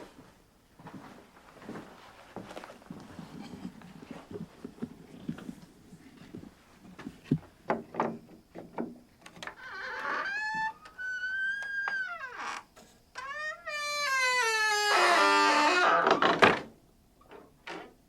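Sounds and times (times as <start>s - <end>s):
door hinges squealing: 9.4s - 16.6s.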